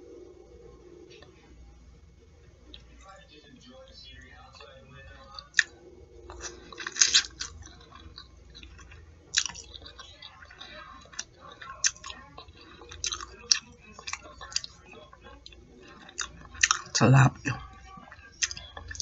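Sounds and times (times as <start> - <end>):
person chewing crispy food: 4.6 - 19.0.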